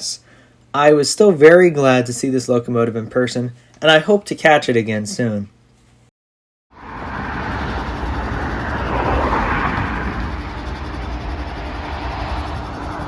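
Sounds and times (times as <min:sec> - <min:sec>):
diesel freight train rumbling: 0:06.8 - 0:13.0.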